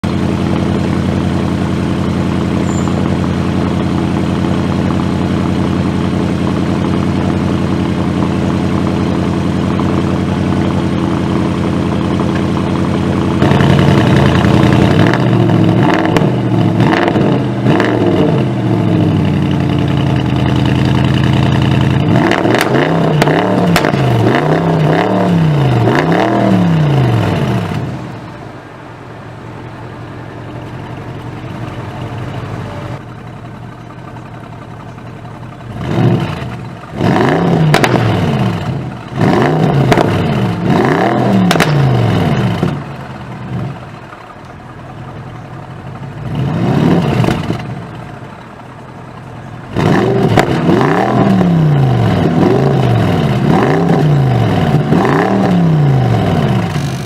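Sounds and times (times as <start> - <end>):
car engine idling and revving: 0.0 - 57.0
exhaust crackles and pops: 12.2 - 26.4, 33.1 - 57.0.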